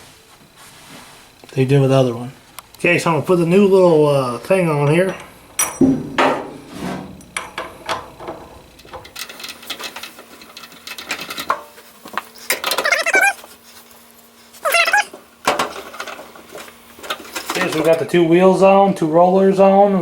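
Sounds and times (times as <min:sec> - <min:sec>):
low steady hum: 0:01.7 - 0:09.6
metal parts clicking and knocking: 0:05.6 - 0:11.5.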